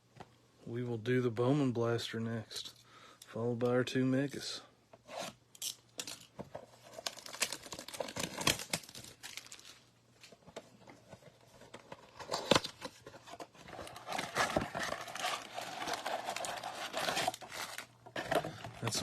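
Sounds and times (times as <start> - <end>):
plastic wrap crinkling and tearing: 6.8 - 10.0, 13.6 - 19.0.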